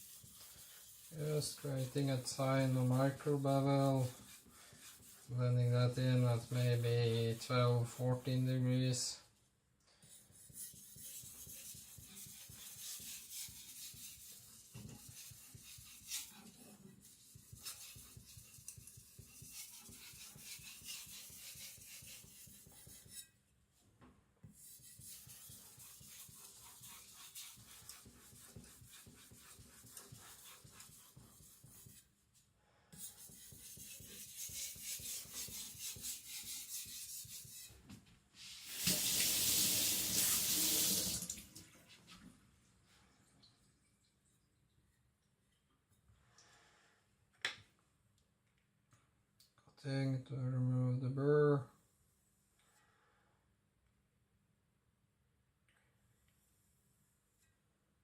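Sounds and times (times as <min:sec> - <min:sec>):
knife scraping on whetstone: 0:10.4 - 0:23.4.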